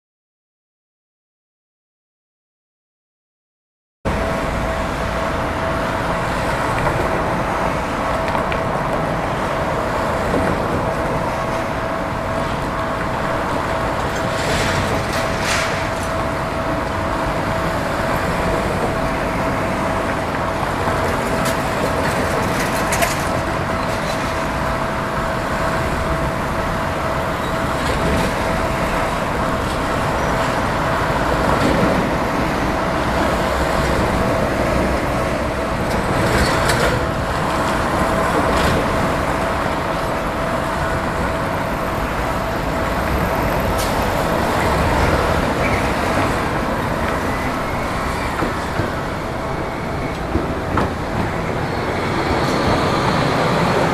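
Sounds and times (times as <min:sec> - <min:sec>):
high-pitched hum: 0:04.1 - 0:53.9
road traffic passing: 0:04.1 - 0:53.9
hissing squeals: 0:47.1 - 0:50.7.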